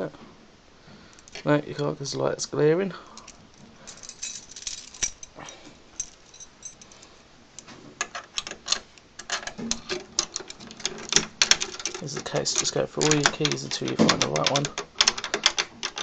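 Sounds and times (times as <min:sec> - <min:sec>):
key rattling in a lock: 0:03.1 - 0:07.1, 0:08.0 - 0:16.0
keys jingling on a ring: 0:03.1 - 0:07.2
key clicking against lock levers: 0:08.0 - 0:16.0.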